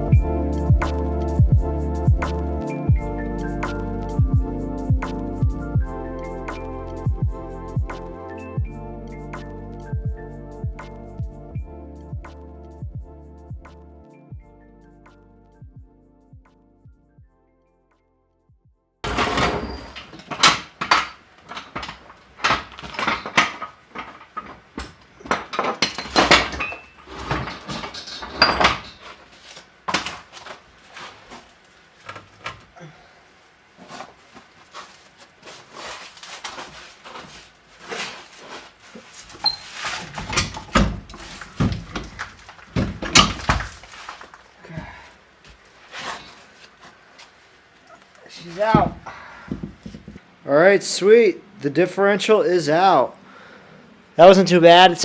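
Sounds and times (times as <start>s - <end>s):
metal parts and tools clunking: 19.0s - 30.3s, 39.3s - 44.5s
loud thumps: 48.7s - 50.2s.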